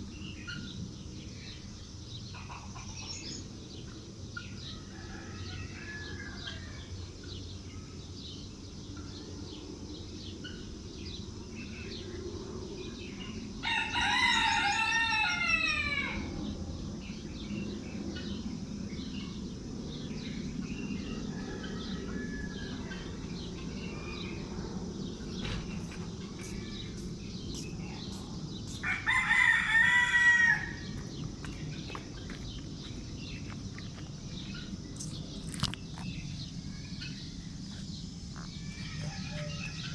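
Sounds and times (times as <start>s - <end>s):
small birds chirping: 0.1s - 4.6s, 16.4s - 39.9s
rooster crowing: 4.7s - 6.9s, 13.6s - 16.4s, 21.0s - 23.2s, 28.7s - 31.1s, 38.4s - 39.9s.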